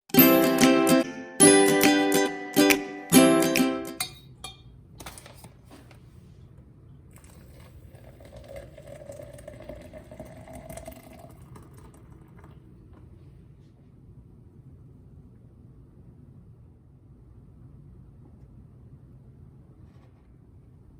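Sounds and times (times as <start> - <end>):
plucked-string music: 0.1 - 4.2
faint steady hum: 4.1 - 20.9.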